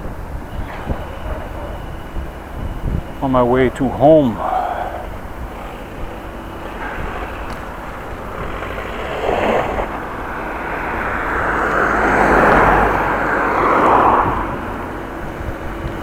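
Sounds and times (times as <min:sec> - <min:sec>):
bicycle road noise: 0:00.0 - 0:16.0
passing motor vehicle: 0:00.0 - 0:16.0.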